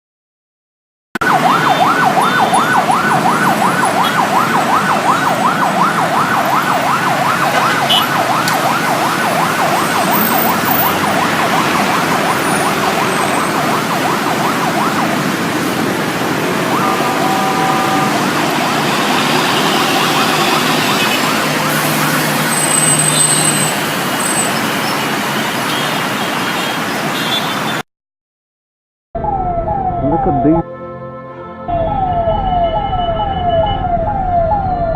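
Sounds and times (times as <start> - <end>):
ambulance siren yelping: 1.2 - 24.4, 29.2 - 30.7, 31.7 - 34.9
road traffic noise: 1.2 - 27.9
short steady horn tone: 16.8 - 18.2.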